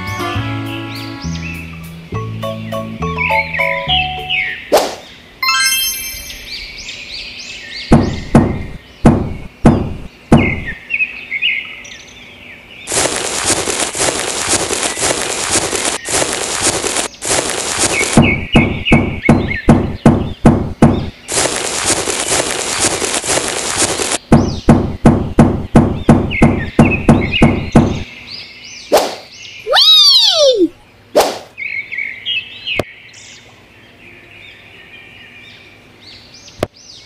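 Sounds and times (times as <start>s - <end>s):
birds chirping: 0.6s - 37.0s
high ringing chime: 5.4s - 6.8s
sharp knocks: 7.9s - 10.8s, 18.0s - 21.2s, 24.2s - 28.0s
steady hissing noise: 12.8s - 26.4s.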